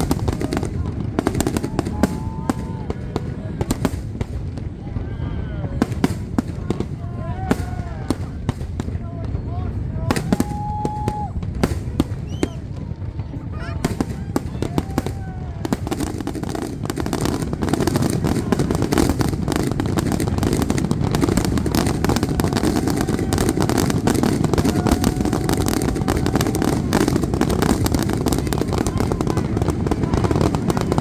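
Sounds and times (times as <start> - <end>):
fireworks bangs and crackle: 0.0 - 31.0.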